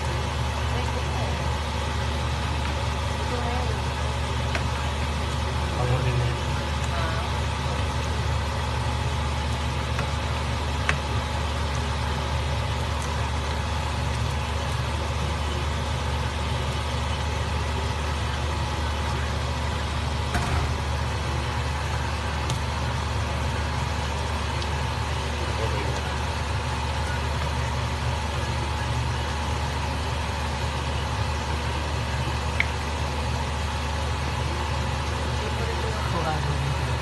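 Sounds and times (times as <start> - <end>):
steady low hum: 0.0 - 37.0.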